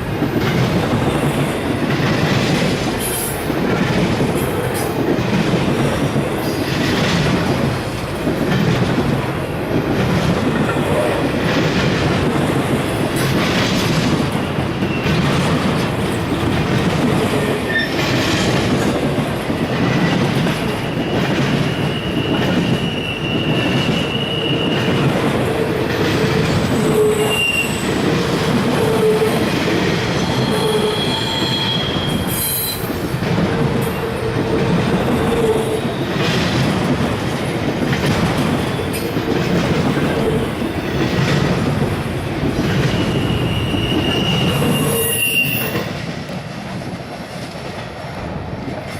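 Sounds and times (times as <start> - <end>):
steel wheels rumbling on rail: 0.0 - 48.9
high-pitched wheel squeals: 21.0 - 24.9, 26.9 - 27.9, 30.2 - 32.9, 42.8 - 45.9.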